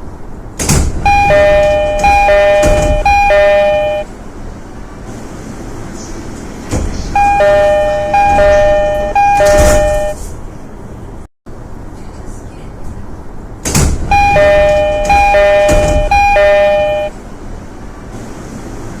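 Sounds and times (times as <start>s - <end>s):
train doors moving: 0.4s - 4.1s, 4.9s - 10.6s, 13.6s - 19.0s
two-note train door chime: 1.1s - 4.1s, 7.2s - 10.2s, 14.1s - 17.1s.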